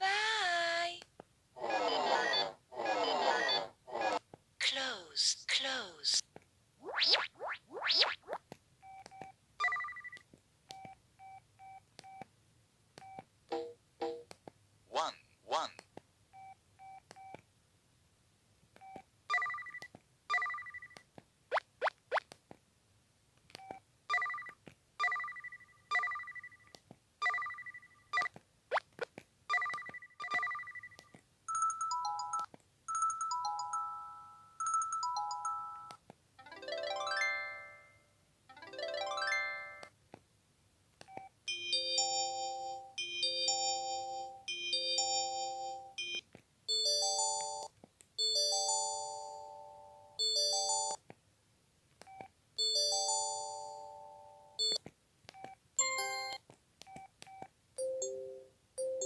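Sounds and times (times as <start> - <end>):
phone alert tones: 1.7 - 3.8, 8.8 - 10.2, 18.8 - 21.0, 23.6 - 28.3, 29.5 - 39.9.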